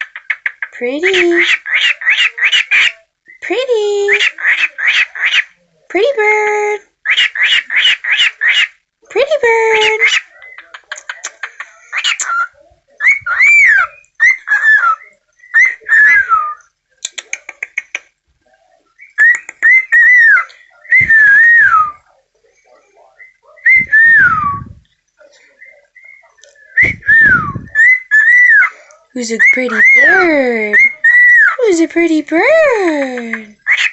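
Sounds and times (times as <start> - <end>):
parrot whistling: 12.0 - 16.7.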